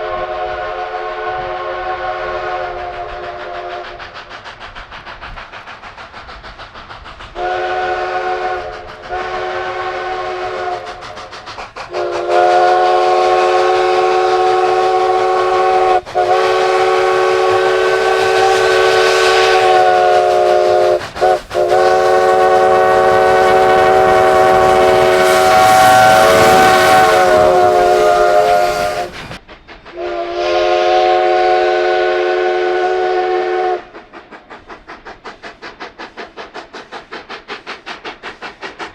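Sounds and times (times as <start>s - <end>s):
faint rhythmic train pulsing: 0.0s - 38.9s
hiss: 0.0s - 38.9s
locomotive chime horn blasts: 21.6s - 29.1s, 30.0s - 33.8s.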